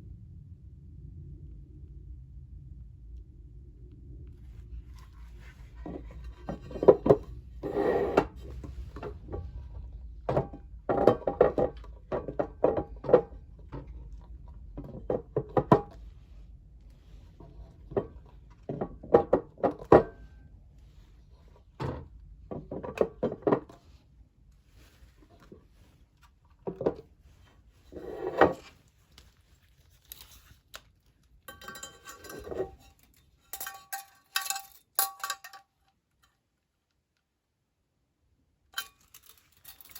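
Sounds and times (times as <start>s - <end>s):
metal cookware clattering: 31.5s - 35.6s.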